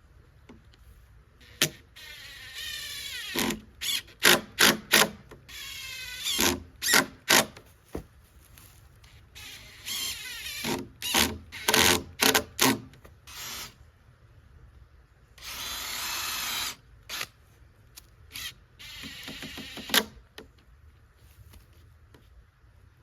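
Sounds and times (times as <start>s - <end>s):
power drill bursts: 1.4s - 7.6s, 13.3s - 13.8s, 15.4s - 17.3s, 18.3s - 20.2s.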